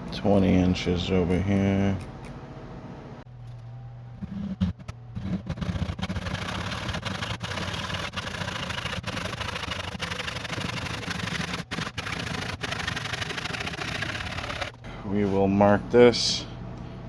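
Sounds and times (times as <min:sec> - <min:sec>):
saw cutting wood: 0:04.2 - 0:14.8.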